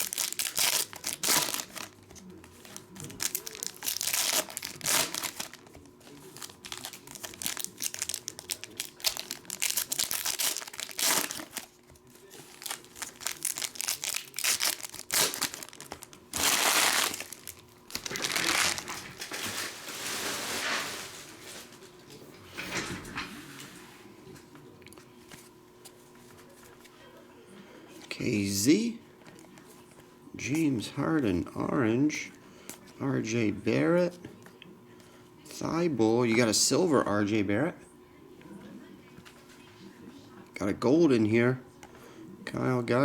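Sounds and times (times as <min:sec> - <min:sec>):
card pack wrappers tearing and crinkling: 0:00.0 - 0:21.8.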